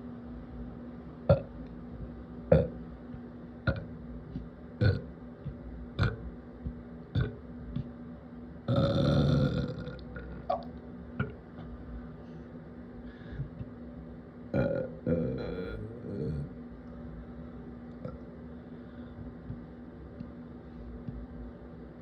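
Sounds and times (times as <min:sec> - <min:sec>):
steady low hum: 0:00.0 - 0:22.0
person burping: 0:02.5 - 0:02.7, 0:03.7 - 0:03.9, 0:04.8 - 0:05.1, 0:06.0 - 0:06.2, 0:07.2 - 0:07.4, 0:08.7 - 0:11.3, 0:14.5 - 0:16.5.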